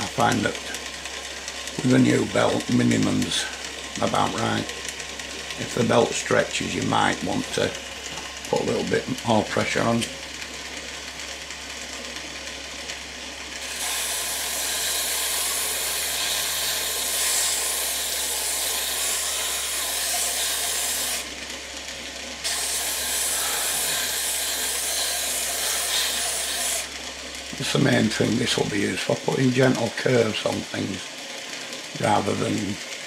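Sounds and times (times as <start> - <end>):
belt sander sanding wood: 0.0 - 33.0.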